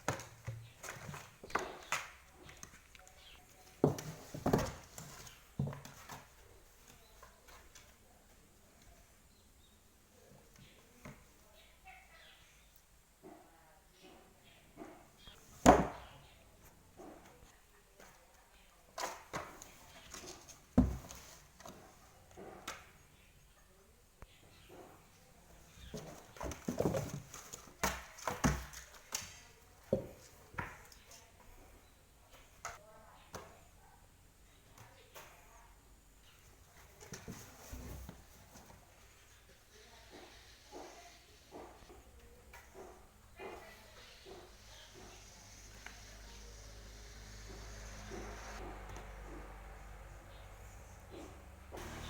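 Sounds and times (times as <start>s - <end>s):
kitten scuffling and pouncing: 0.0s - 8.2s, 18.9s - 23.0s, 24.9s - 31.7s, 36.5s - 52.0s.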